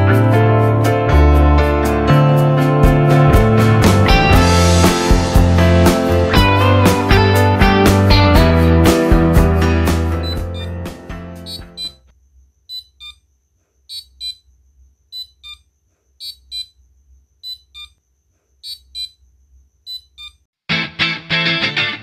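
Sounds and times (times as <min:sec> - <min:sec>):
background music: 0:00.0 - 0:12.0
buzzer beeping in pairs: 0:10.2 - 0:10.8, 0:11.4 - 0:16.8, 0:17.4 - 0:18.0, 0:18.6 - 0:19.2, 0:19.8 - 0:20.5.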